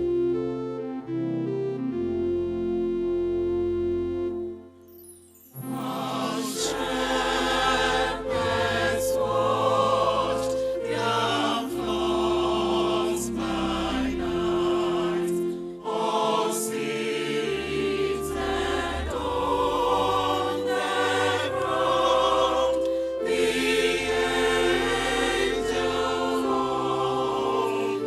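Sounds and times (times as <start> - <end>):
choir singing gospel: 5.6 - 28.0.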